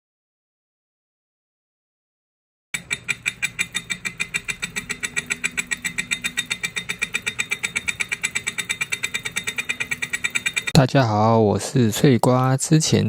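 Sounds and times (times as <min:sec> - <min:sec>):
bicycle trainer fast ticking: 0:02.8 - 0:10.8
low hum: 0:02.8 - 0:11.2.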